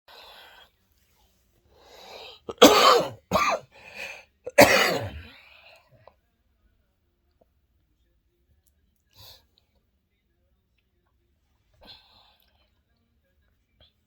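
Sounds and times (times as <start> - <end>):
man coughing hard: 2.5 - 5.3.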